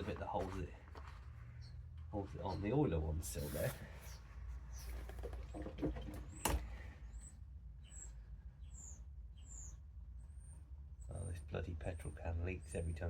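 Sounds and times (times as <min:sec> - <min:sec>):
small bird chirping: 0:07.0 - 0:11.3.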